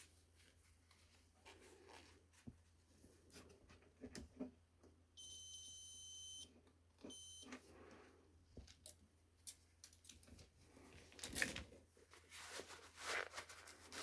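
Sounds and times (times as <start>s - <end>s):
electronic tester beep: 5.2s - 6.5s, 7.1s - 7.5s.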